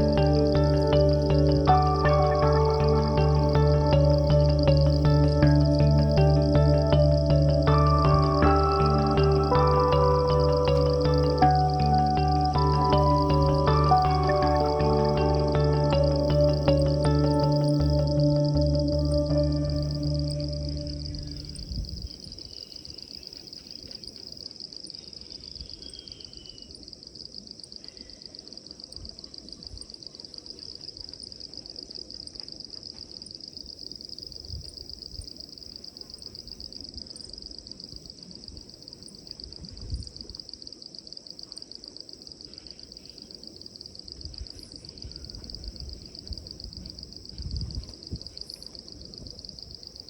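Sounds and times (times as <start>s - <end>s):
low rumbling noise: 0.0s - 21.9s.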